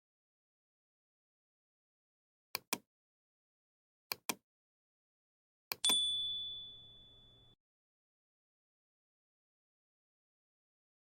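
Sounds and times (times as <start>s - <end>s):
small metal bell ding: 5.8s - 7.6s.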